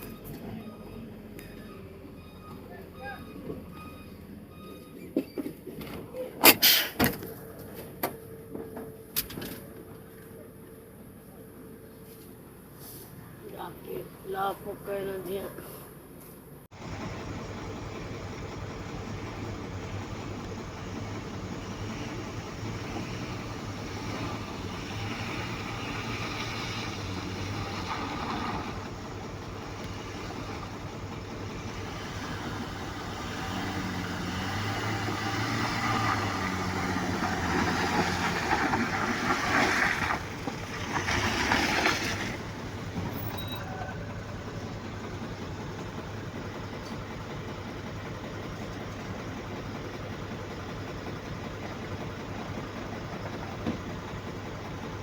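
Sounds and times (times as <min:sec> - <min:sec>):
engine running: 0:16.7 - 0:55.0.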